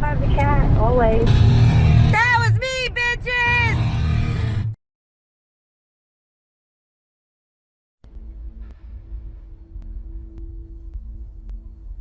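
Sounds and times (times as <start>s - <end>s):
low droning background music: 0.2s - 2.6s, 3.8s - 4.8s, 8.0s - 12.0s.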